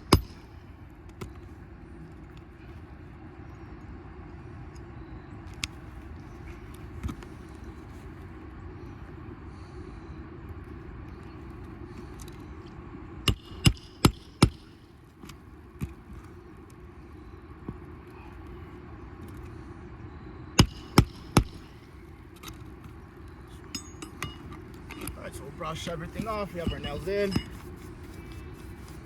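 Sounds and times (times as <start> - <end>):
low background rumble: 0.0 - 29.0
hammer striking roofing nails: 13.3 - 14.8, 20.6 - 21.7.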